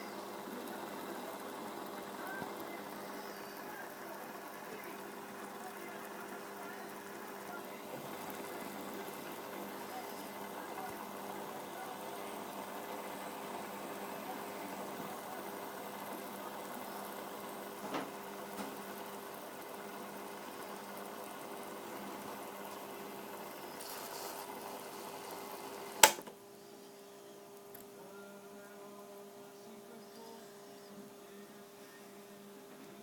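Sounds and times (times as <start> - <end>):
water boiling and bubbling: 0.1 - 26.0
sharp click: 26.0 - 26.3.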